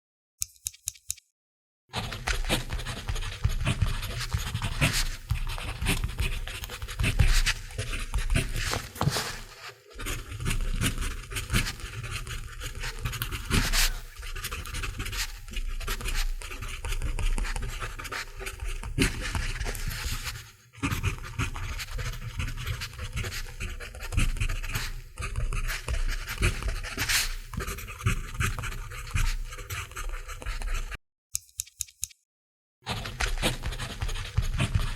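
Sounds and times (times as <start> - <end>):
short pencil clicks: 0.4 - 1.3, 31.3 - 32.2
pencil scratching on paper: 2.0 - 31.0, 32.9 - 34.9.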